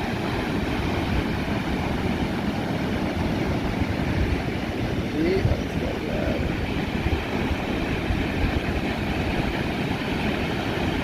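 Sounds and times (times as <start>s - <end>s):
sea surf washing in: 0.0s - 11.0s.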